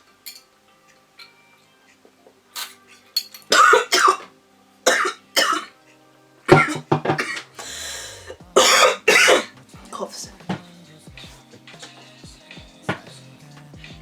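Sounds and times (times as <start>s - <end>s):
person coughing: 3.5s - 4.3s, 4.9s - 5.7s, 6.5s - 9.5s.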